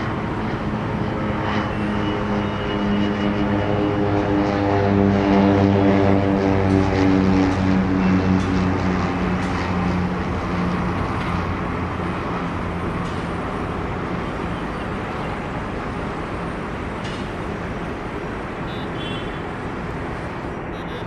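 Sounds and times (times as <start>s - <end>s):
propeller airplane engine drone: 0.0s - 21.0s
steady rushing noise: 6.4s - 21.0s.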